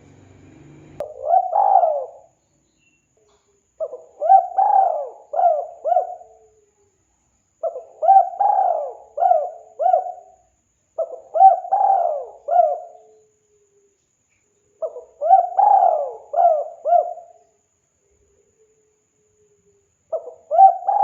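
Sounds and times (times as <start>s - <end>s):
dove cooing: 1.0s - 2.4s, 3.3s - 6.7s, 7.6s - 10.4s, 11.0s - 13.9s, 14.8s - 17.4s, 20.1s - 21.0s.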